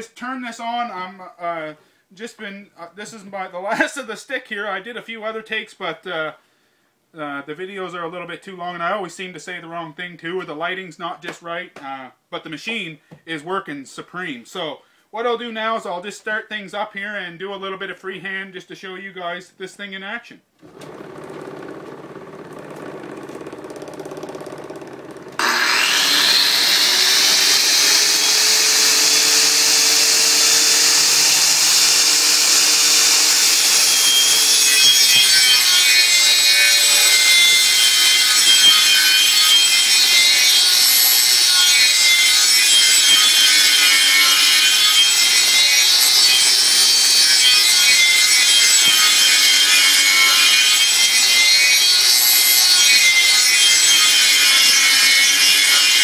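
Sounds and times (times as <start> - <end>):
lathe motor whine: 20.6 - 35.0, 35.7 - 56.0
wood cutting rubbing sound: 20.6 - 56.0.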